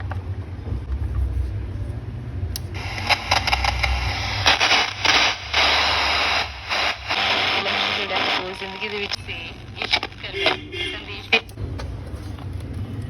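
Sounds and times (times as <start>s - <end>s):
radio speaker low hum: 0.8s - 11.6s
radio static hiss with crackles: 2.7s - 11.5s.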